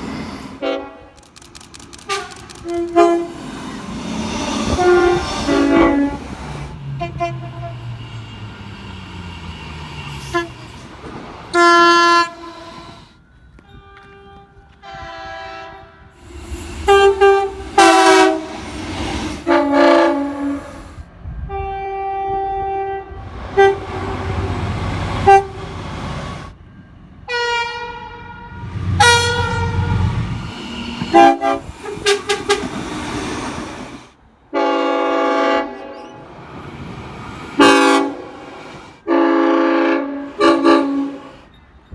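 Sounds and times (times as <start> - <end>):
train horn blasts: 0.0 - 1.2, 2.1 - 3.5, 4.6 - 8.7, 10.0 - 10.8, 11.5 - 16.2, 16.8 - 18.6, 19.4 - 24.6, 25.2 - 25.8, 27.3 - 30.1, 31.0 - 32.7, 34.5 - 36.0, 37.6 - 38.4, 39.0 - 41.4
low rumble of moving trains: 0.0 - 41.9.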